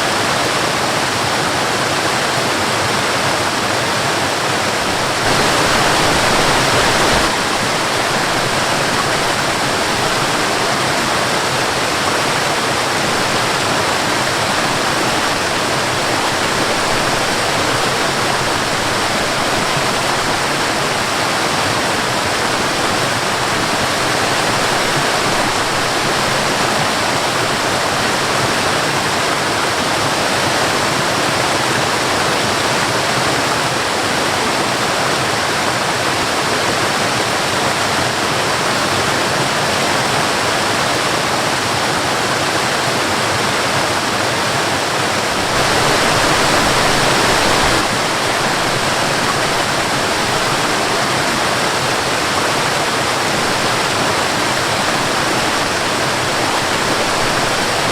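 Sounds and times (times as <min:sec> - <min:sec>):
waterfall pouring: 0:03.6 - 0:29.1, 0:45.1 - 0:57.9.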